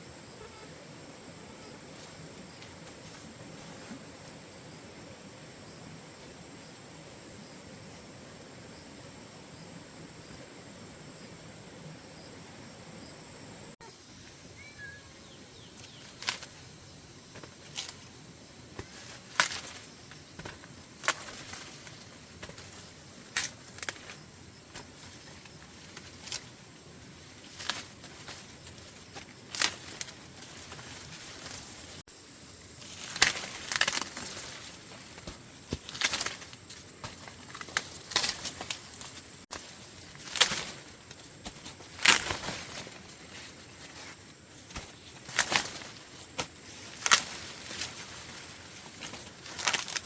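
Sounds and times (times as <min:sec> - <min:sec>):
faint outdoor background: 0:00.0 - 0:50.0
sharp snaps and rustles: 0:15.8 - 0:16.7, 0:17.3 - 0:18.2, 0:18.8 - 0:32.0, 0:32.8 - 0:50.0.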